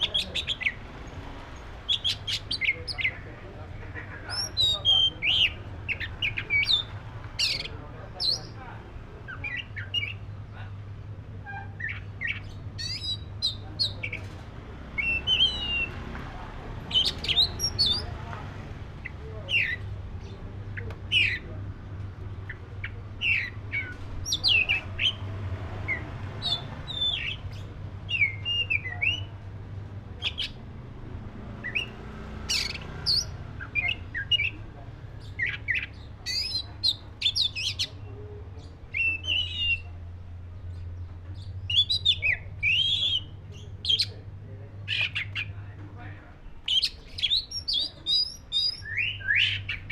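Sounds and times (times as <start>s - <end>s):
bird singing whistled notes: 15.0s - 16.0s, 28.1s - 29.3s, 31.6s - 34.6s, 41.4s - 44.1s, 46.6s - 49.9s.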